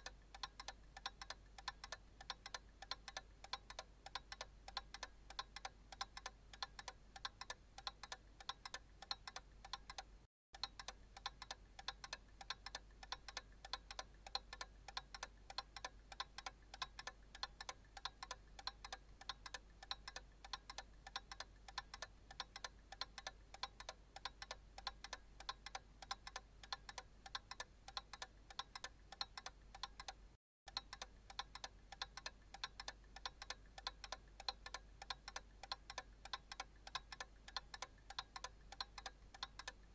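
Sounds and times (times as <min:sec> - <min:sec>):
analog clock ticking: 0:00.0 - 0:39.9.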